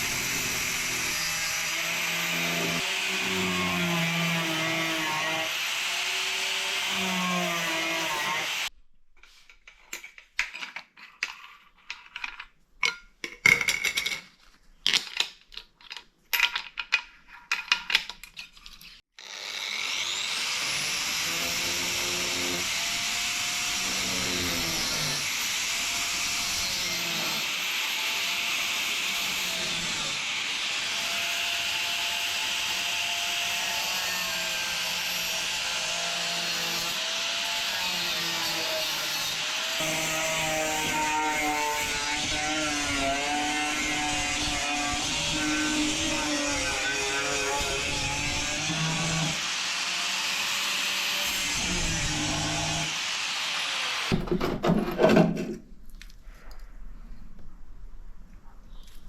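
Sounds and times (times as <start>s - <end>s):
angle grinder cutting metal: 0.0s - 8.7s, 19.2s - 54.2s.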